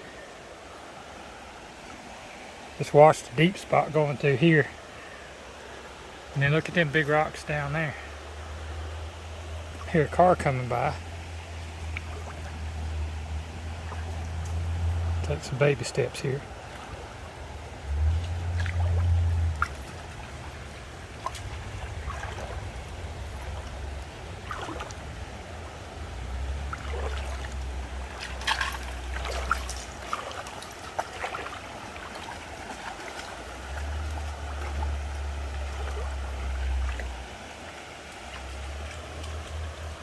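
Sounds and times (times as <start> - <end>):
creek water trickling over rocks: 0.0 - 40.0
splashes from wading: 8.0 - 15.3, 16.0 - 40.0.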